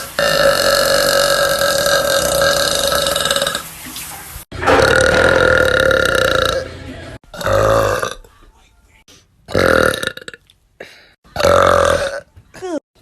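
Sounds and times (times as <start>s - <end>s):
girl burping loudly: 7.3s - 8.2s, 11.4s - 12.8s.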